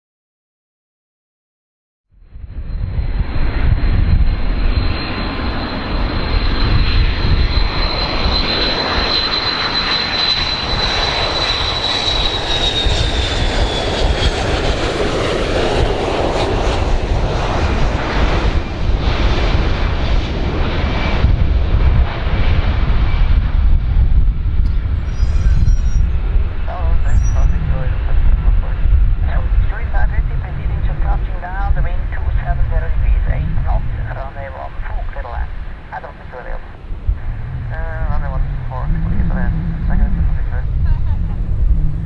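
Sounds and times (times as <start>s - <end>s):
airplane engines rumbling: 2.1s - 42.0s
high thin engine whine: 24.6s - 31.0s, 34.8s - 42.0s.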